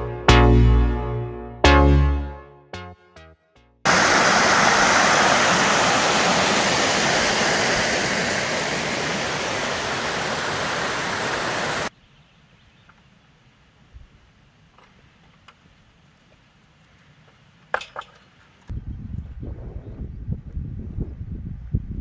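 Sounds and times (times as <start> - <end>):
fast-flowing water rushing: 3.9 - 11.9.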